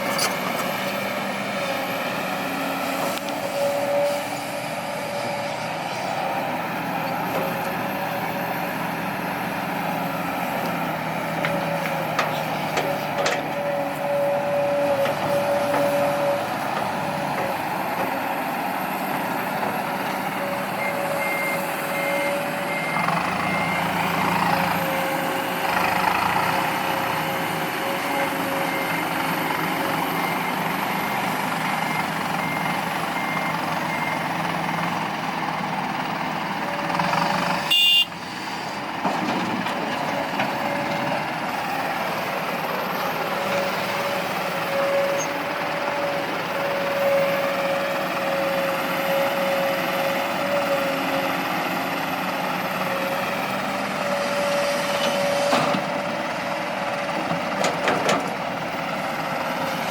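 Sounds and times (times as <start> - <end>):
diesel engines running: 0.0 - 59.9
reversing alarm beeping: 20.4 - 25.3, 27.0 - 34.4, 37.7 - 38.1.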